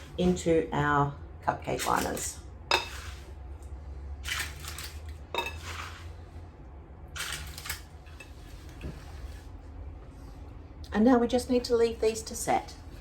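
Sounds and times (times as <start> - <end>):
spoon scraping a bowl: 1.8 - 3.4, 4.3 - 6.2.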